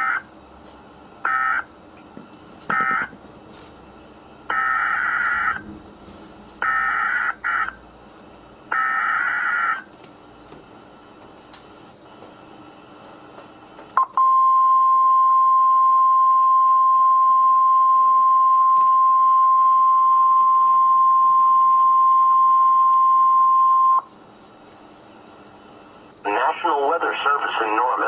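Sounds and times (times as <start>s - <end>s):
loud steady alarm beep: 4.5s - 5.6s, 14.0s - 24.1s
faint radio static: 25.4s - 28.0s.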